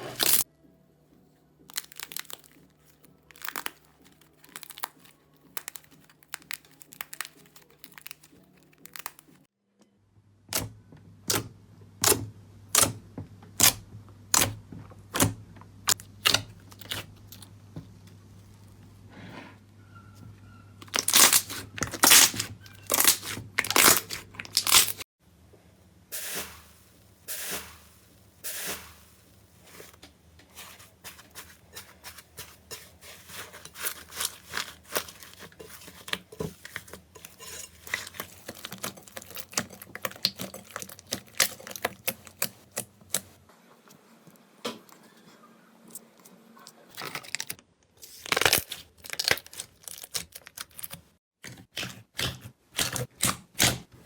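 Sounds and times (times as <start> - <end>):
wet slime squishing: 1.6 - 9.5, 13.6 - 19.0, 20.8 - 25.1, 29.7 - 43.4, 45.9 - 54.0.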